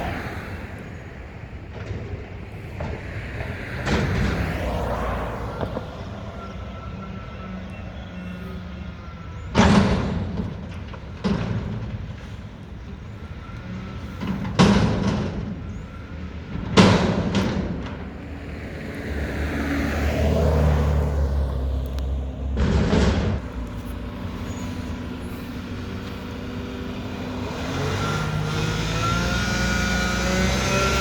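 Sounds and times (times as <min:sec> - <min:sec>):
garbage truck diesel engine: 0:00.0 - 0:31.0
steel container slamming on truck: 0:09.5 - 0:12.0, 0:22.6 - 0:23.5.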